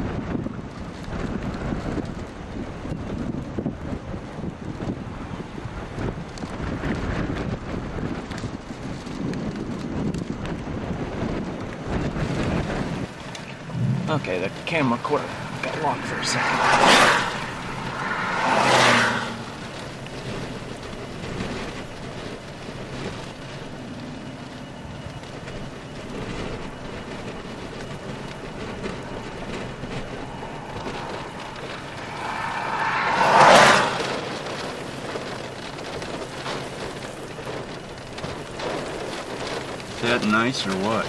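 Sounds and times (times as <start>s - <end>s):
vehicle passing on highway: 11.8s - 41.0s
steady outdoor hiss: 12.6s - 41.0s.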